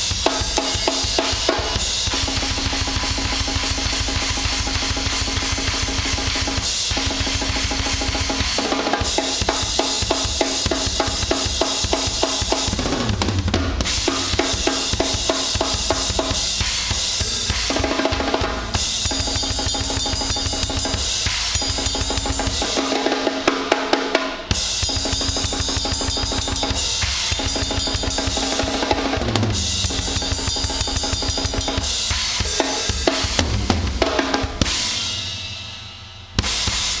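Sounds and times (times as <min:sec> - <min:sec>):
fast drum kit playing: 0:00.0 - 0:37.0
cymbal ringing: 0:13.8 - 0:37.0.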